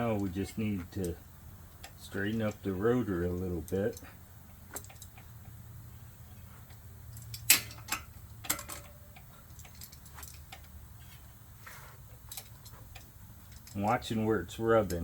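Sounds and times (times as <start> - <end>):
metallic ticks and clinks: 3.3 - 5.6, 6.6 - 10.8, 12.2 - 14.1.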